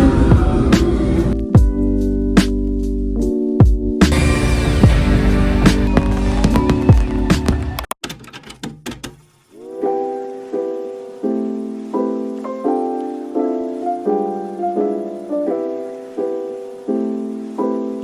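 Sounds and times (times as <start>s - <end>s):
piano chords: 4.1s - 7.9s, 9.8s - 18.0s.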